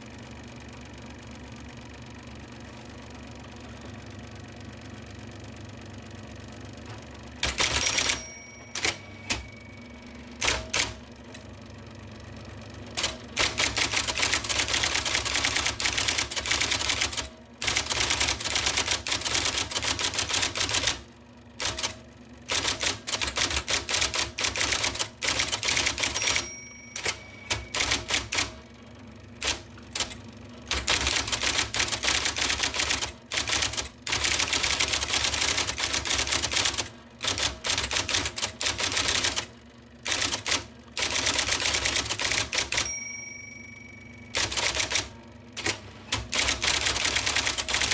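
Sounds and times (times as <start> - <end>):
electric typewriter typing: 7.4 - 11.4, 12.9 - 28.8, 29.4 - 47.9
typewriter motor humming: 7.4 - 11.5, 12.9 - 28.6, 29.4 - 43.4, 44.3 - 47.9
brief ringing tone: 7.8 - 10.3, 26.2 - 28.2, 42.8 - 44.4.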